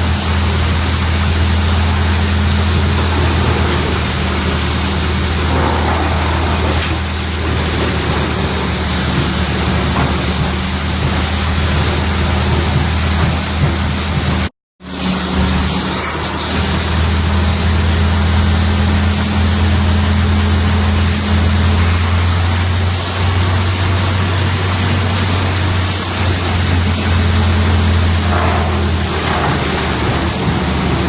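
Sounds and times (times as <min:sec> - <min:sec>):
wood chipper running: 0:00.0 - 0:31.0.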